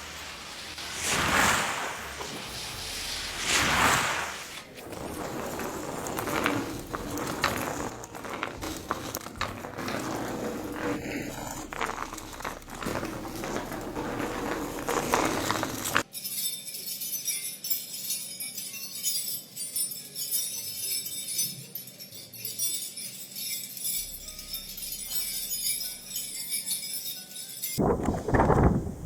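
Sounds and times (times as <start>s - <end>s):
crackling rustling noise with clicks: 0.0s - 16.1s, 27.8s - 29.0s
jingling bells: 14.6s - 27.8s.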